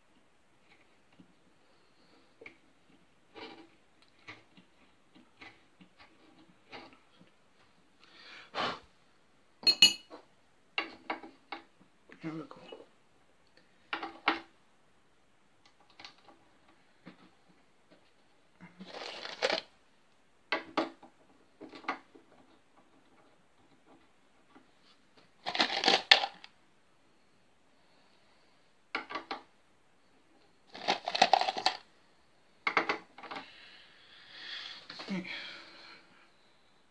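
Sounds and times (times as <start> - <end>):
small hard objects clinking: 18.8 - 19.7, 25.4 - 26.4, 30.7 - 31.8.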